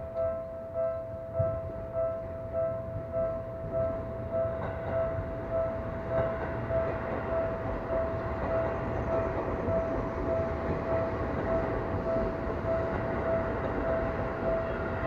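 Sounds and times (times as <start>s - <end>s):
level crossing warning bell: 0.0s - 15.0s
train rumbling over rails: 0.0s - 15.0s.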